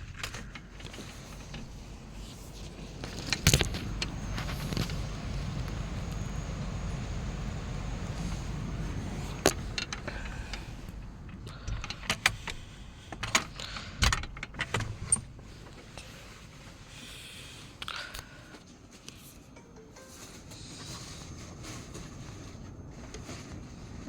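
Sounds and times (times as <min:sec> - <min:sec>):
low steady rumble: 0:00.0 - 0:24.0.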